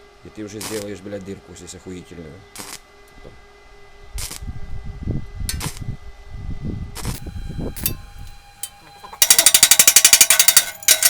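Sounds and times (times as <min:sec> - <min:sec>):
low rumbling handling noises: 0:07.1 - 0:11.0
welding arc crackling: 0:07.1 - 0:11.0.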